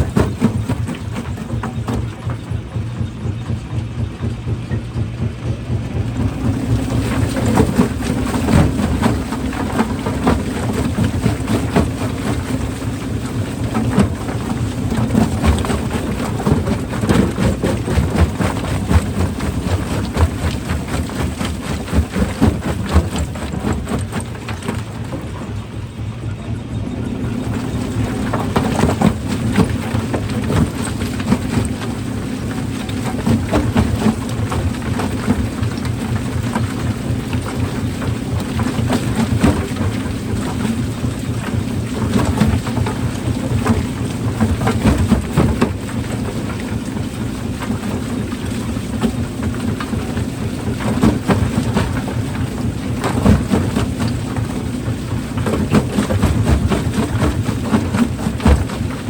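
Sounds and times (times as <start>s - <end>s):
rock-crushing machinery drone: 0.0s - 59.0s.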